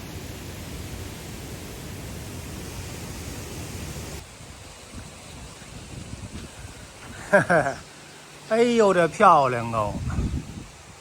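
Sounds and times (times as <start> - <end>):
mountain stream rushing: 0.0 - 11.0.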